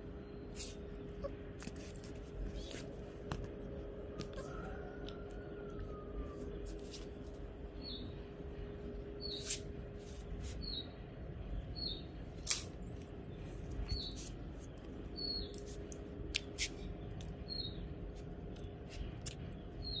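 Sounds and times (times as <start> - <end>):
puppy whimpering: 1.1 - 2.8, 4.2 - 4.7.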